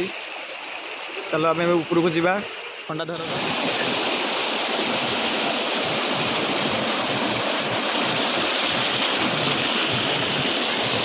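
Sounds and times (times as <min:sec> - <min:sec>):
waterfall roar: 0:02.9 - 0:11.0.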